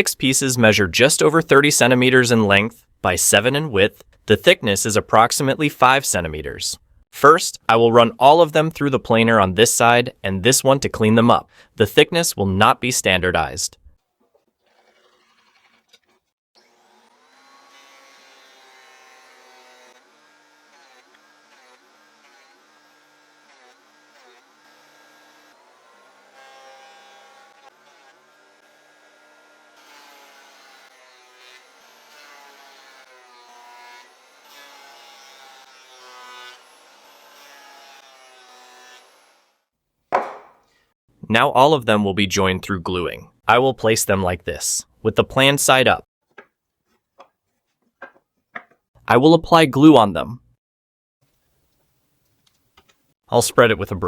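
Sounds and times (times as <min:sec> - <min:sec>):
electric wood planer cutting: 0:16.6 - 0:39.6.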